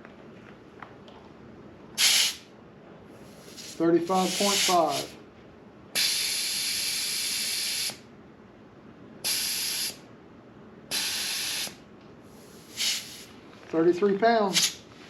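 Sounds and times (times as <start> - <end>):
air hissing from tire valve: 2.0 - 2.4, 3.2 - 5.2, 6.0 - 8.0, 9.2 - 10.0, 10.9 - 13.3, 14.5 - 14.8.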